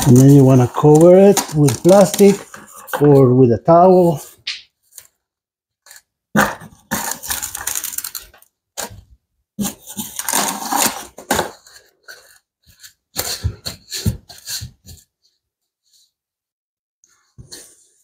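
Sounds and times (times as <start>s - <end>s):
rustling and crinkling cover: 0.0s - 3.2s, 6.4s - 9.0s, 9.6s - 15.0s.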